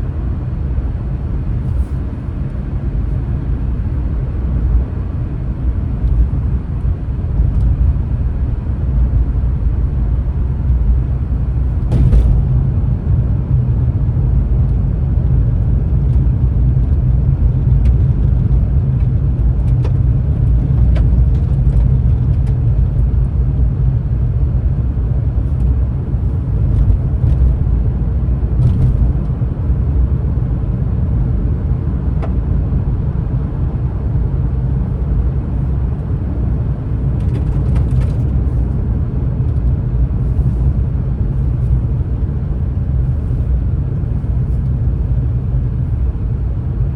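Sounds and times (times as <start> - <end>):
vehicle engine and road rumble: 0.0 - 46.9.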